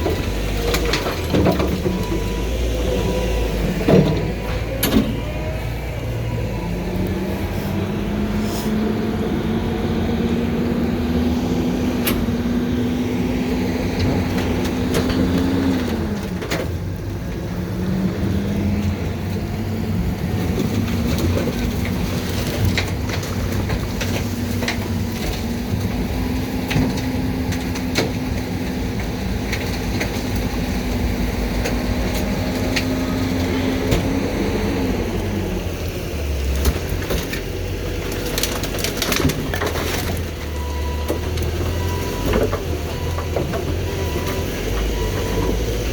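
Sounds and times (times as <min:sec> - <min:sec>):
knocks and clatter: 0:00.0 - 0:02.3
refuse truck engine revving: 0:00.0 - 0:45.9.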